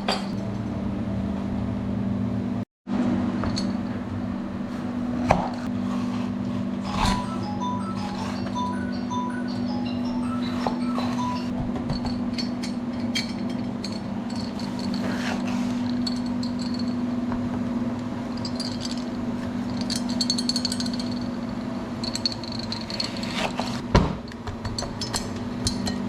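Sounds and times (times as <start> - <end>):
steady low hum: 0.0 - 26.0
metal utensils clinking: 6.8 - 17.0, 18.3 - 23.8, 24.7 - 26.0.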